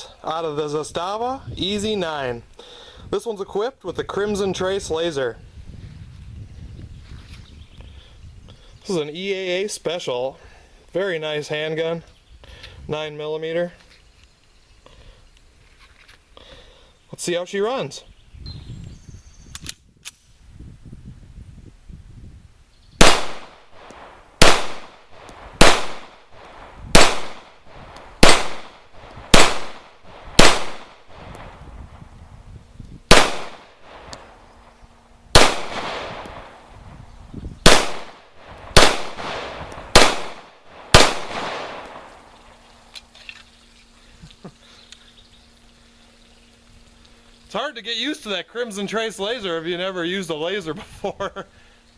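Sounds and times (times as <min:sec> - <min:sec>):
pistol firing single shots: 0:23.0 - 0:31.6, 0:33.1 - 0:34.3, 0:35.3 - 0:36.6, 0:37.6 - 0:42.3.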